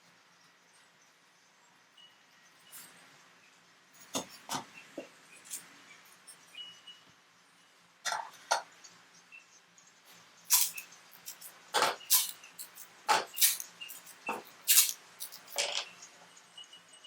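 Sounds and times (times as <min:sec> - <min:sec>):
masking tape ripping: 0:10.5 - 0:11.4, 0:12.1 - 0:15.6.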